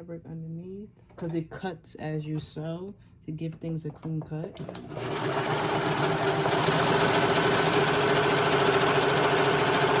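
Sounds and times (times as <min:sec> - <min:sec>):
overlock sewing machine stitching: 0:04.5 - 0:10.0.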